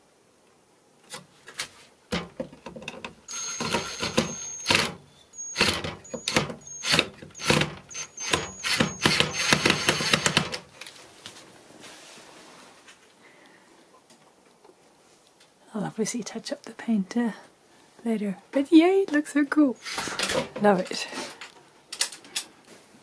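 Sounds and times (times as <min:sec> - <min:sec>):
short high squeaks: 0:03.3 - 0:10.3.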